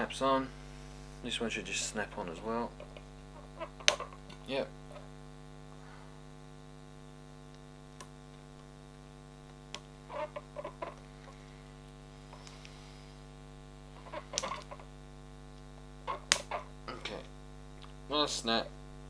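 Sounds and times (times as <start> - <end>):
electrical mains hum: 0.0 - 19.0
small plastic clicks and taps: 3.8 - 4.4.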